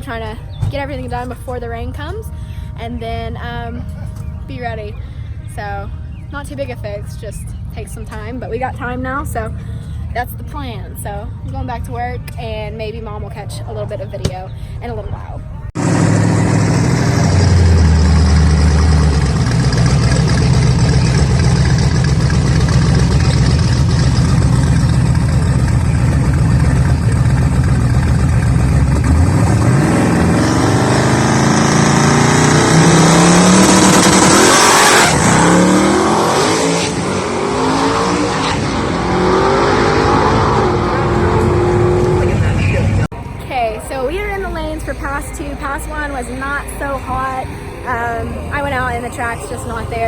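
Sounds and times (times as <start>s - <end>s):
race car engine revving: 15.8s - 43.1s.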